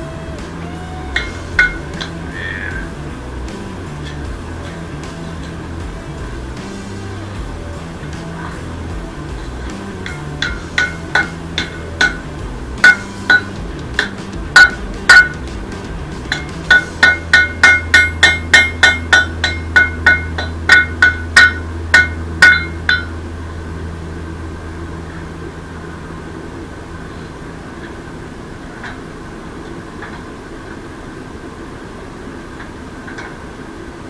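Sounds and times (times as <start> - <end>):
hammer ringing on anvil: 1.1 - 2.9, 9.7 - 15.5, 16.3 - 23.3.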